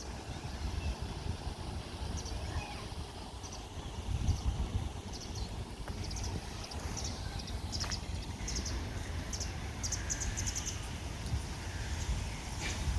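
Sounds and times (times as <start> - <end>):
wind rumble on microphone: 0.0 - 12.9
small birds chirping: 2.1 - 11.0.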